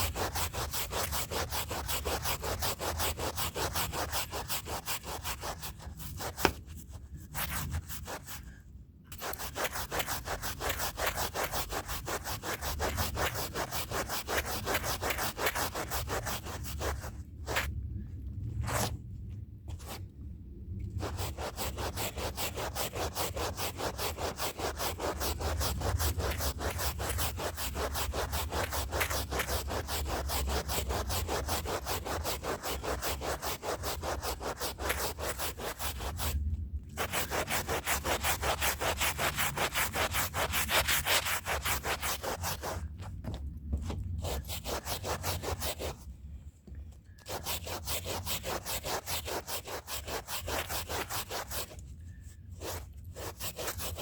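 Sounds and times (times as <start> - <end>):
brush scrubbing a rug: 0.0 - 8.4, 9.1 - 17.7, 20.9 - 46.1, 47.2 - 51.8, 52.6 - 54.0.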